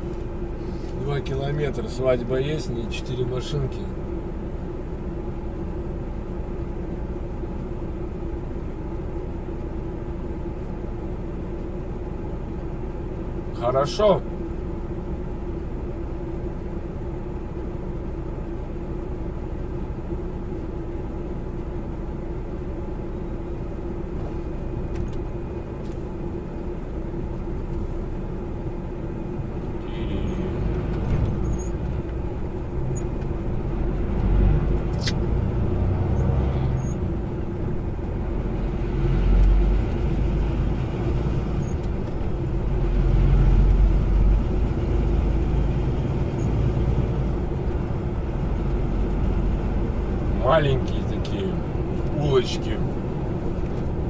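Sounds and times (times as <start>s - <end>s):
truck engine and road noise: 0.0s - 54.0s
sharp click: 34.9s - 35.3s.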